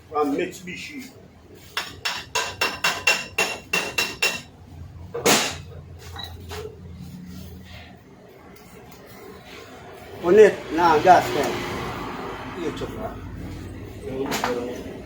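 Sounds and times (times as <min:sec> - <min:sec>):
hammer tapping on metal: 0:01.8 - 0:04.5.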